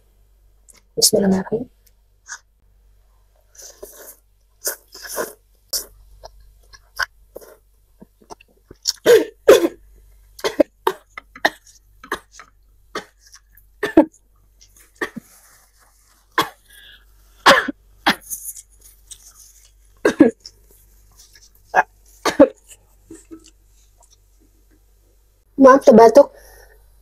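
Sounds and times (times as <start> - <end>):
person slurping noodles: 3.5 - 6.0.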